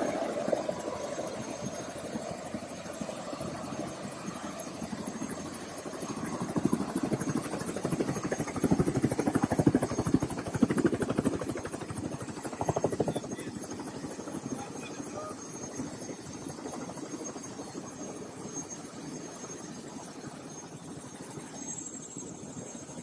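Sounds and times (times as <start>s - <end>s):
helicopter rotor chopping: 0.0s - 23.0s.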